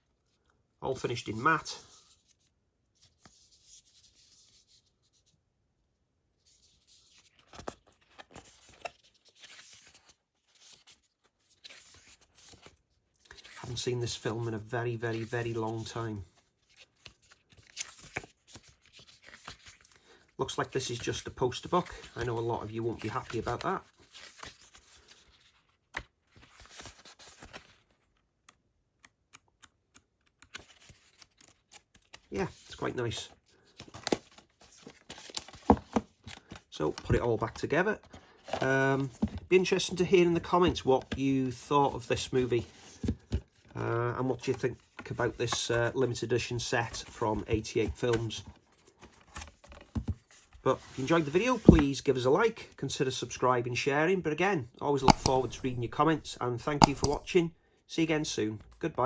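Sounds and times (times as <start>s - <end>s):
paper booklet rustling: 6.4s - 52.5s, 55.0s - 57.5s
pages turning: 6.5s - 20.0s, 20.6s - 41.2s, 46.8s - 51.9s, 55.0s - 57.5s
sharp taps on paper: 55.1s - 55.9s, 56.8s - 57.3s.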